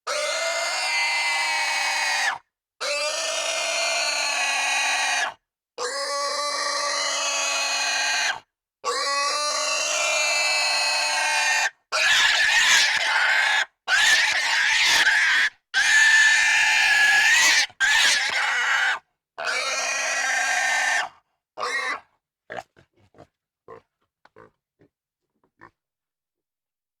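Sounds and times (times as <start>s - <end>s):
pig squealing: 0.1s - 22.6s
faint pig grunts: 21.6s - 24.6s.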